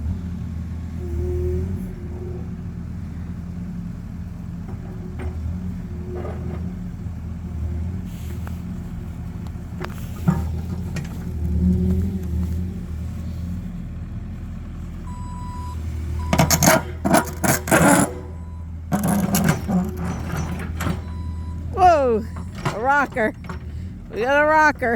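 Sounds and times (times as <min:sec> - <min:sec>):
excavator diesel engine: 0:00.0 - 0:24.9
bucket clanking on rock: 0:16.3 - 0:21.1.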